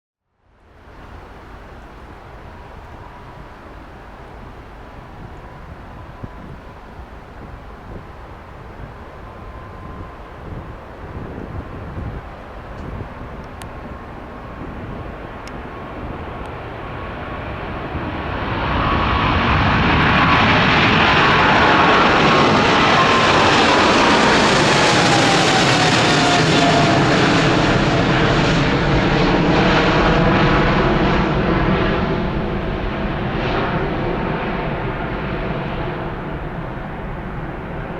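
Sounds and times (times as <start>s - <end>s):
jet engine whine: 0.5s - 37.9s
jet engines roaring: 1.0s - 37.9s.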